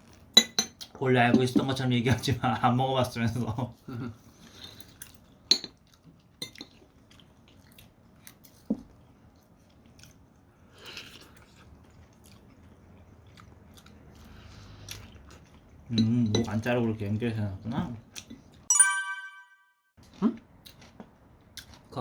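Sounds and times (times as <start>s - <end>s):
chewing crisp food: 4.4s - 15.9s, 20.0s - 22.0s.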